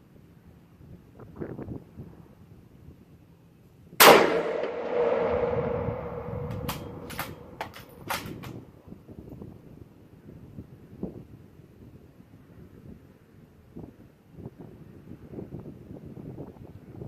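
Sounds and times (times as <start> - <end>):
rifle shot with echo: 4.0 - 8.2
rifle bolt clicks: 6.4 - 8.6.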